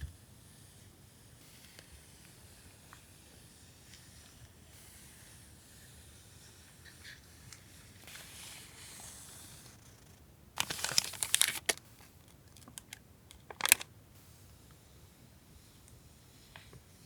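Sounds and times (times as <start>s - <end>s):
packaging crinkling: 10.6s - 13.9s.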